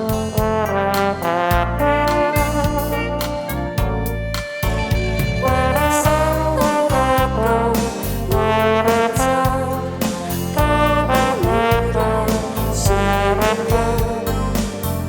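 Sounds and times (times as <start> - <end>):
pop music with drum beat: 0.0 - 15.0.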